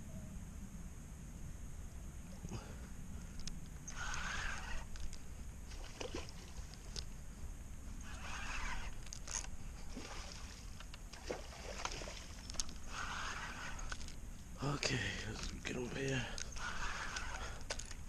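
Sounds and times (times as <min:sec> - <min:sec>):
small clicks: 0:03.2 - 0:04.2.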